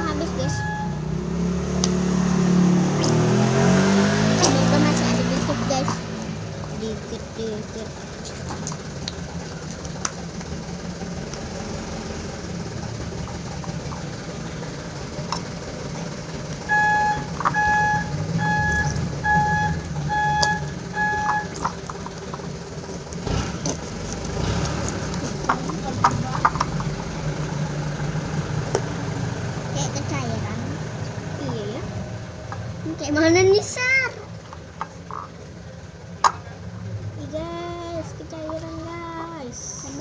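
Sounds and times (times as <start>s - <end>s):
low engine rumble: 0.0s - 40.0s
reversing alarm beeping: 0.4s - 1.1s, 16.6s - 21.7s.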